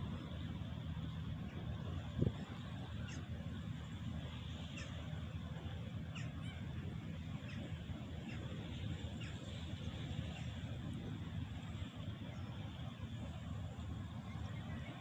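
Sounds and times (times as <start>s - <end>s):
birds calling: 6.0s - 6.8s.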